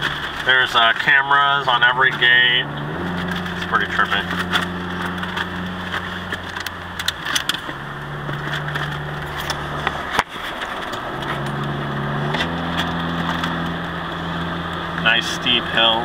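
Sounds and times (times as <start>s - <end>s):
car engine humming: 0.0s - 16.0s
road noise inside car: 0.0s - 16.0s.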